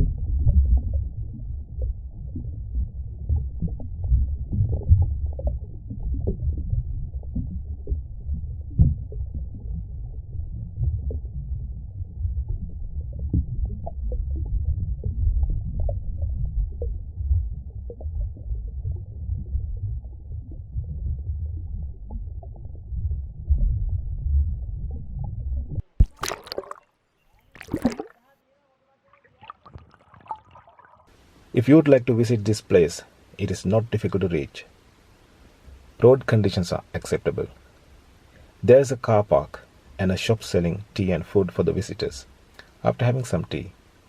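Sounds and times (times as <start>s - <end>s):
underwater stream gurgle: 0.0s - 24.6s, 25.8s - 28.2s, 29.1s - 31.6s.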